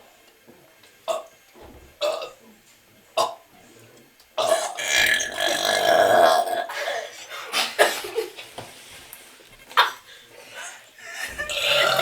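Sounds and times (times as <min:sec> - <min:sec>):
girl burping: 0:11.4 - 0:12.0.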